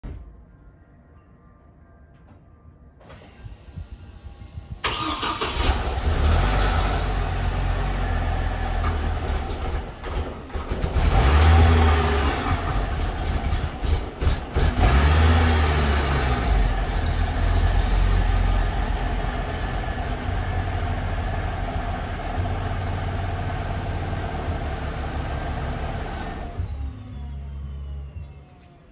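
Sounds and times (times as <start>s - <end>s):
engine starting and idling rough: 4.8s - 28.1s.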